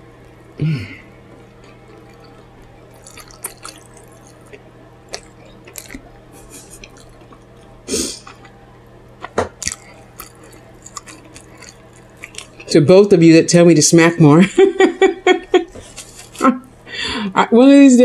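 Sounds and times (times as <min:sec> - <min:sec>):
chewing with mouth clicks: 0:01.2 - 0:08.6, 0:09.2 - 0:12.8.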